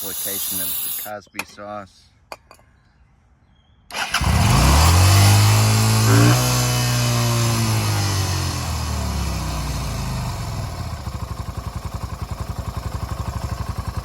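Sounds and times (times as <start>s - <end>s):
engine starting and idling: 3.9s - 6.0s.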